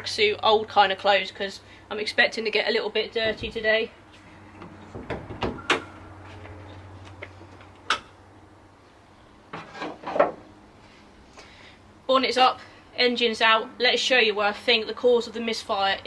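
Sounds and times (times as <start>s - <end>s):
car bonnet clicks and knocks: 4.6s - 6.0s.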